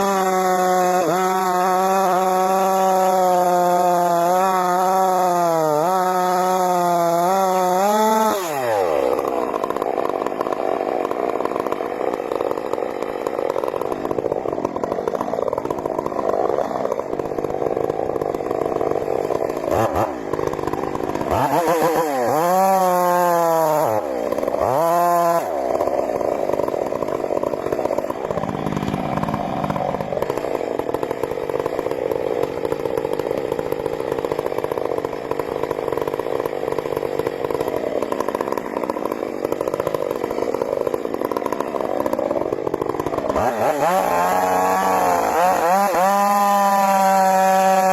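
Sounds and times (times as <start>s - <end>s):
chainsaw cutting wood: 0.0s - 47.9s.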